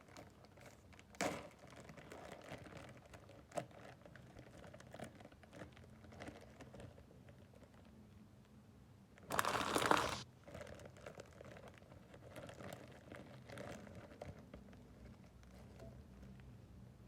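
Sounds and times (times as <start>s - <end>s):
wrapper crinkling: 9.3s - 13.8s.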